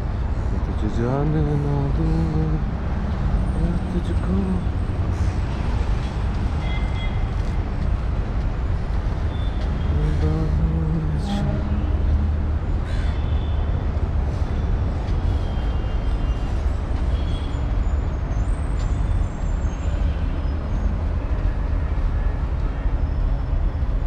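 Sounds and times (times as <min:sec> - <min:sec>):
steady low rumble: 0:00.0 - 0:06.5.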